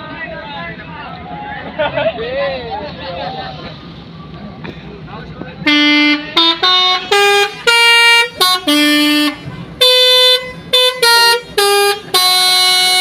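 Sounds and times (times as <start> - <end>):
multi-tone bus air horn tune: 5.6 - 13.0.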